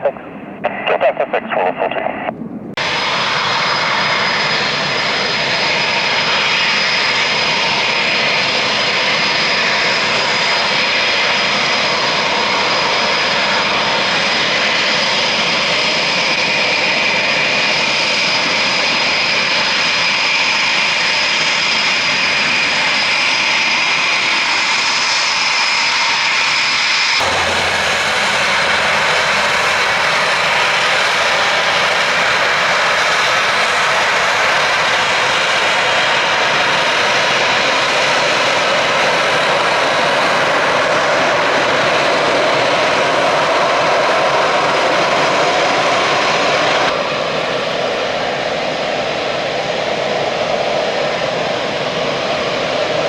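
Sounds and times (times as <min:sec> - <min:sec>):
jet engine roaring and whining: 0:00.0 - 0:53.0.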